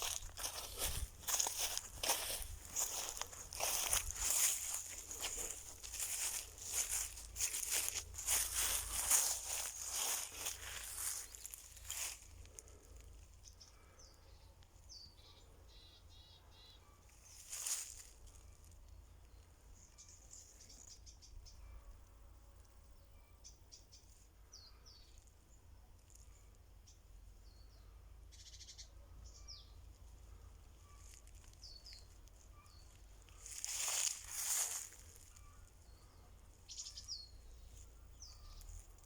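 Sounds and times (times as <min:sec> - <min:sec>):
small birds chirping: 0:00.0 - 0:22.1, 0:22.8 - 0:39.0
bird trill: 0:27.6 - 0:29.8, 0:30.7 - 0:38.9.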